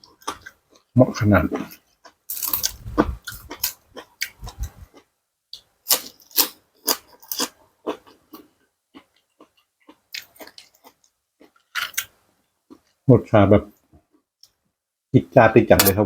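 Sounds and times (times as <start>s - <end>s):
wet crunchy chewing: 1.5s - 5.1s.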